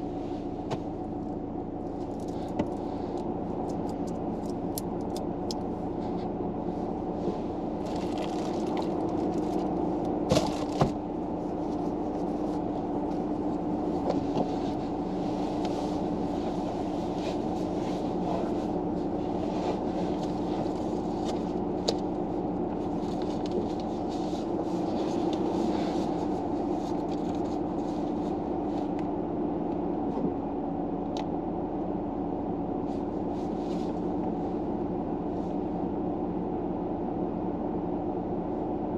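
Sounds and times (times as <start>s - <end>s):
car cabin hum: 0.0s - 38.9s
soft rustling: 11.4s - 21.8s, 22.8s - 29.0s, 32.9s - 34.7s.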